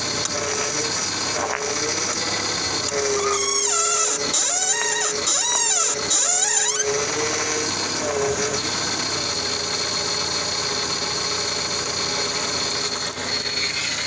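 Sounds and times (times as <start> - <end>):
mechanical running noise: 0.0 - 14.0
car steering squealing: 0.2 - 8.8.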